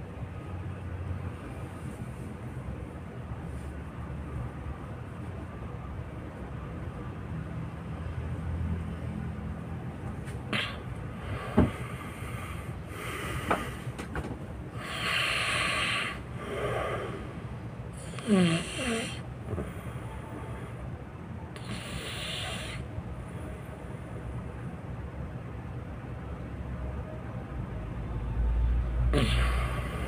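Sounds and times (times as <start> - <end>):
hissing breath: 14.7 - 17.4, 21.6 - 22.9
person snoring loudly: 14.8 - 17.2, 18.0 - 19.2, 21.6 - 22.8, 29.1 - 30.0.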